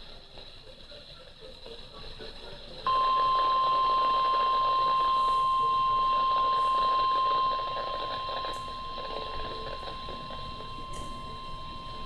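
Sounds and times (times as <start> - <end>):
steady alarm tone: 2.9 - 12.0.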